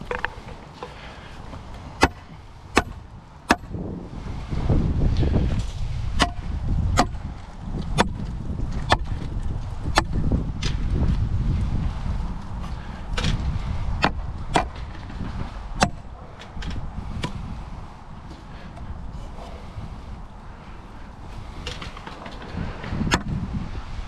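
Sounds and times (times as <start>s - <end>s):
sharp knocks with metallic ring: 2.0s - 3.7s.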